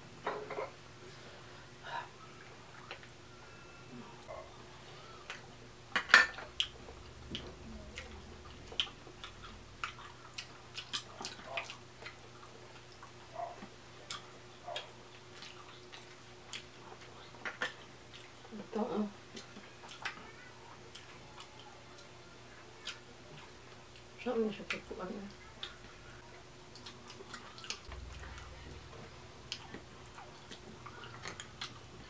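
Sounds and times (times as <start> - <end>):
chewing smacks: 6.5 - 18.4, 19.3 - 20.3, 22.8 - 24.1, 26.7 - 28.6, 29.5 - 32.0.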